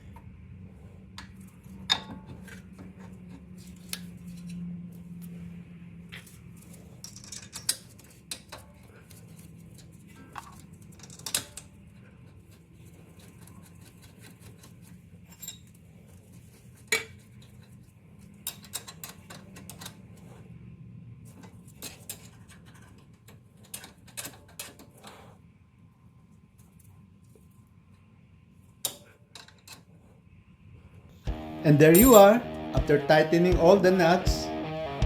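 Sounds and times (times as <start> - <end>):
metallic clinks of hand tools: 31.9 - 32.4.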